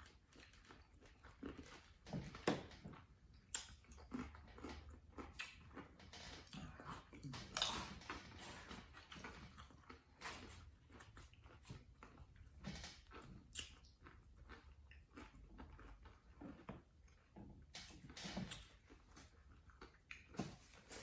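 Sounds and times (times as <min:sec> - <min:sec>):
chewing: 0:00.0 - 0:21.0.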